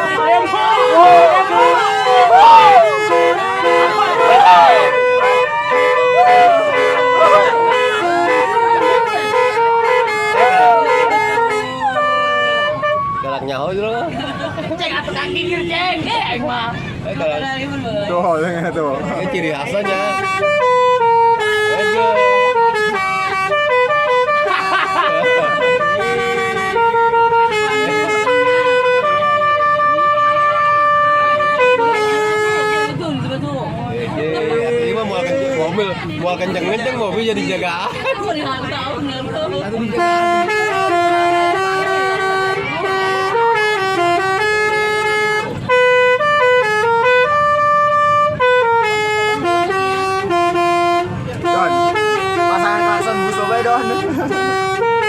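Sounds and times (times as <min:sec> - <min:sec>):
bus musical horn melody: 0:00.0 - 0:13.4, 0:19.6 - 0:33.2, 0:38.2 - 0:55.0.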